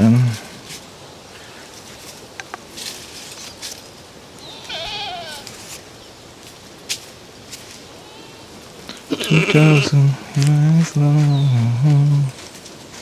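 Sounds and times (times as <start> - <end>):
light clicks and rustles: 0.4 - 4.1
sheep bleating: 4.4 - 5.8, 7.9 - 10.5.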